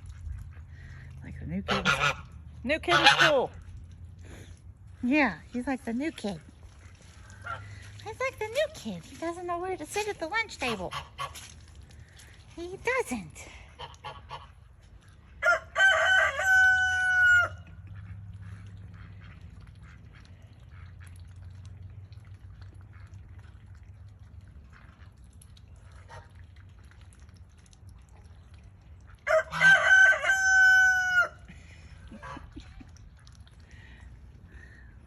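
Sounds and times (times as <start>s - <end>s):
rooster crowing: 15.4s - 17.6s, 29.3s - 31.4s.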